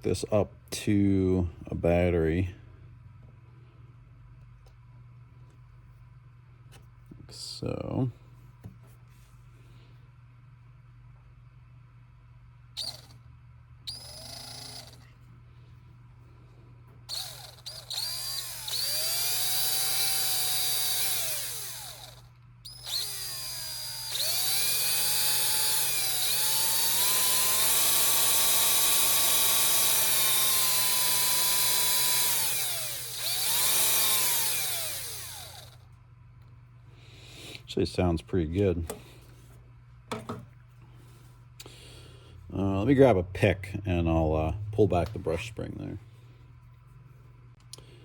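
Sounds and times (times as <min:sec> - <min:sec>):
electric motor whining: 0:12.8 - 0:13.2, 0:13.9 - 0:15.1, 0:17.1 - 0:35.8.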